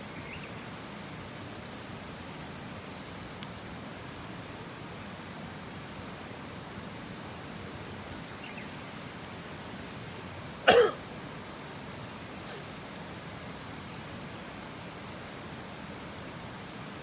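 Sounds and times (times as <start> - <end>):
steady hiss: 0.0 - 17.0
faint sharp ticks: 3.2 - 4.3.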